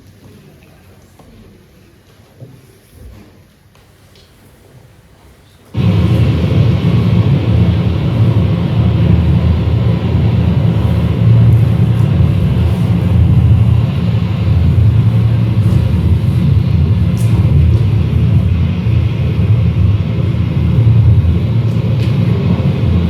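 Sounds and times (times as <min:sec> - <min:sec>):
rumbling noise music: 0:05.8 - 0:23.0.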